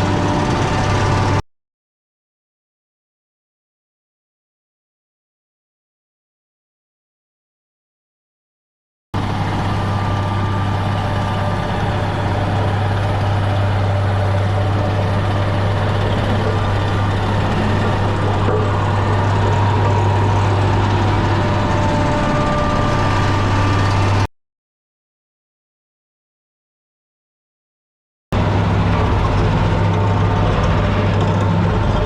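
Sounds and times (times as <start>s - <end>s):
engine running steadily: 0.0s - 1.4s, 9.2s - 24.3s, 28.4s - 32.0s.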